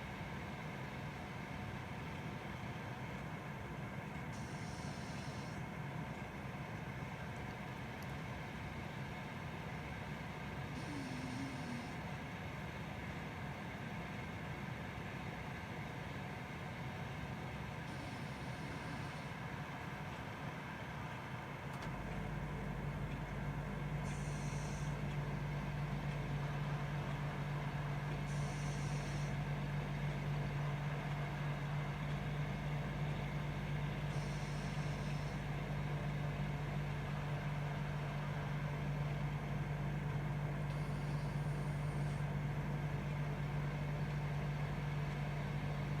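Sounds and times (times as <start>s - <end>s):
air conditioner hum: 2.6s - 13.3s
dog snoring: 10.7s - 12.0s, 40.7s - 42.2s.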